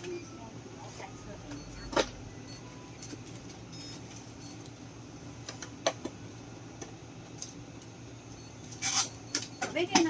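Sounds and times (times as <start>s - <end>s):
steady store hum: 0.0s - 10.0s.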